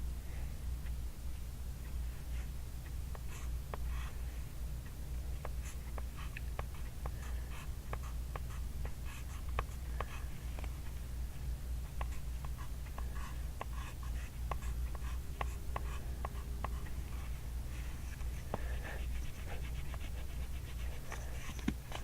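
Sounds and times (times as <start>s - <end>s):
steady low hum: 0.0s - 22.0s
pencil lead tapping paper: 5.4s - 10.8s, 12.0s - 17.3s, 18.1s - 22.0s
pencil scratching on paper: 12.0s - 22.0s.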